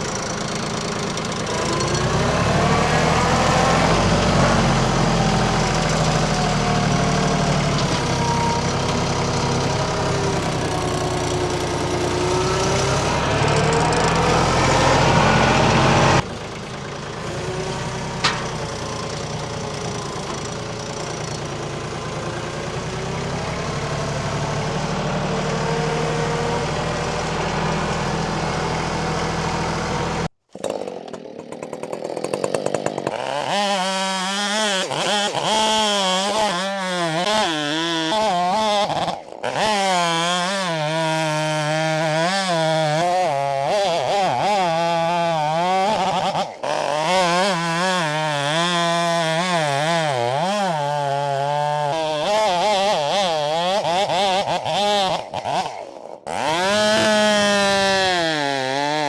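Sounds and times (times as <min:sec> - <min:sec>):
lower engine running: 0:00.0 - 0:30.3
chainsaw cutting log: 0:00.0 - 0:59.0.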